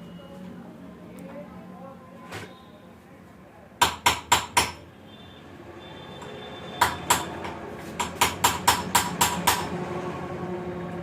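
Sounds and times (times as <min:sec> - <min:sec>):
hammer striking metal: 0:06.8 - 0:09.7.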